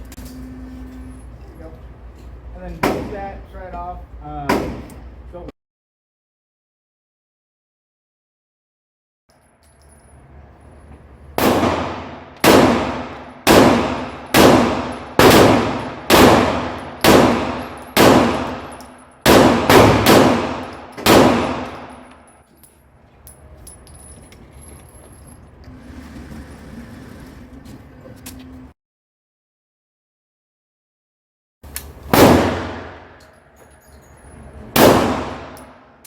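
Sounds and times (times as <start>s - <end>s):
pistol shots with ringing tail: 11.4s - 22.3s, 32.1s - 33.2s, 34.8s - 35.9s.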